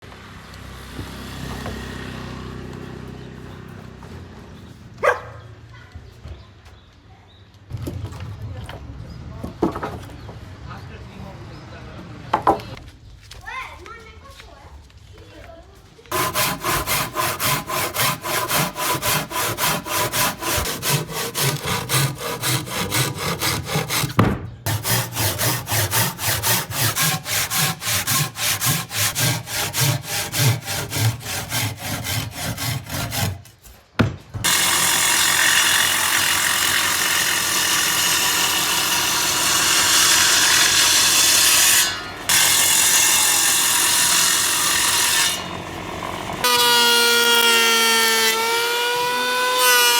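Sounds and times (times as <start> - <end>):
power tool on wood: 16.1 - 33.3, 34.4 - 49.9
hand saw cutting wood: 16.1 - 49.9.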